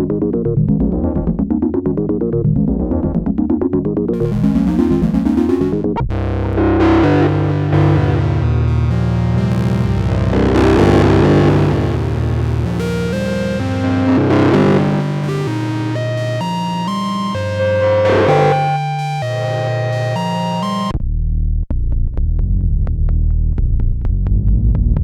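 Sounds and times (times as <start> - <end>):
low synth bass pattern: 0.0 - 25.0
synthesizer sequenced melody: 3.7 - 20.9.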